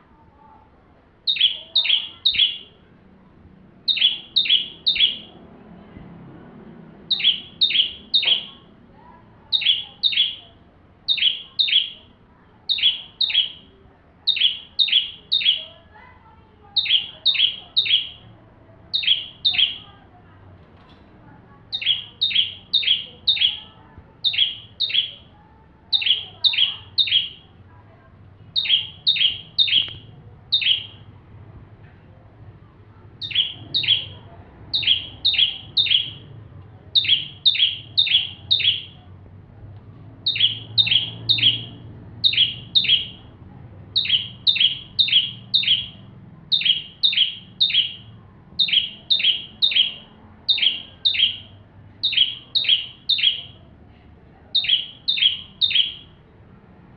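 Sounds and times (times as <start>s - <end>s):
bird singing sharp high notes: 1.3s - 2.8s, 3.9s - 5.4s, 7.1s - 8.7s, 9.5s - 12.1s, 12.7s - 15.8s, 16.7s - 18.3s, 18.9s - 20.0s, 21.5s - 27.6s, 28.6s - 31.1s, 33.2s - 36.4s, 37.0s - 39.0s, 40.2s - 43.3s, 43.9s - 53.6s, 54.5s - 56.2s.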